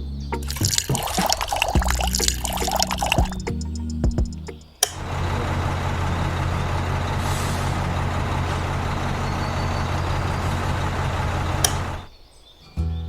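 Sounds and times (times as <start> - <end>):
truck engine running: 3.0 - 12.1
sharp click: 3.4 - 5.0.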